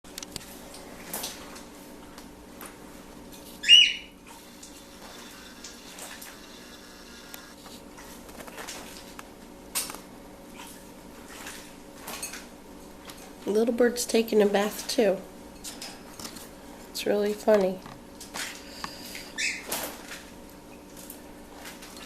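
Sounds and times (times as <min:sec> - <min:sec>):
parrot squawk: 0:03.6 - 0:04.1
low hum: 0:04.2 - 0:07.7.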